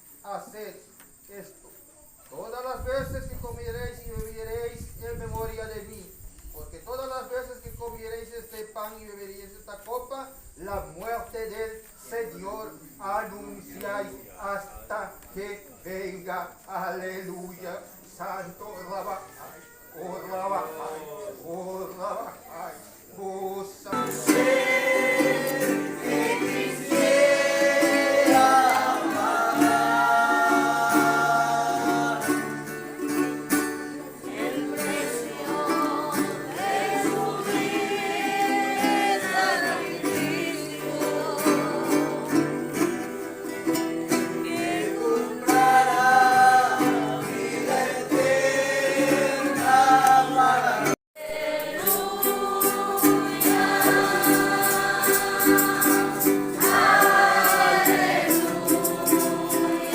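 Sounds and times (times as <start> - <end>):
congregation singing a hymn: 10.6 - 59.9
guitar accompaniment: 23.9 - 59.9.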